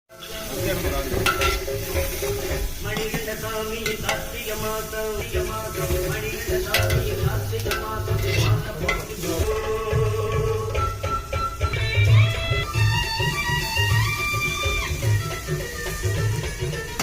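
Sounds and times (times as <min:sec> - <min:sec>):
background music with melody: 0:00.1 - 0:17.0
food sizzling in a frying pan: 0:00.1 - 0:17.0
spoon clicking against pan: 0:06.7 - 0:09.1.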